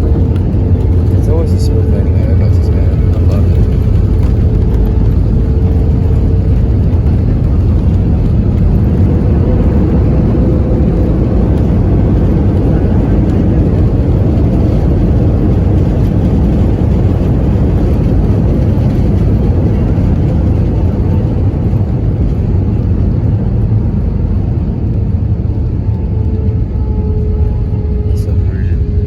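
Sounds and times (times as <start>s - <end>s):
jet cabin low rumble: 0.0s - 29.0s.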